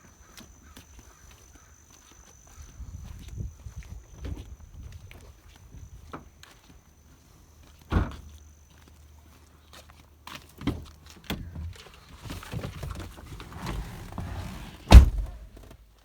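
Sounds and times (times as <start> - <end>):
footsteps: 13.3 - 15.7
truck door slamming: 13.4 - 15.7
thuds and knocks: 13.5 - 15.6.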